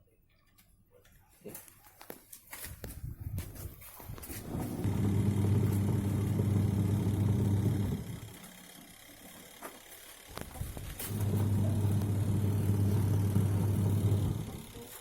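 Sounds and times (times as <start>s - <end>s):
washing machine motor humming: 4.4s - 15.0s.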